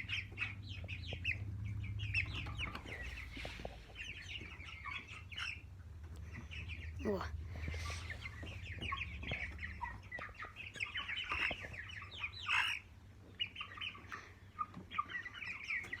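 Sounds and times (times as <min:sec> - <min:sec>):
chickens peeping and clucking: 0:00.0 - 0:16.0
low rumble: 0:00.1 - 0:10.1.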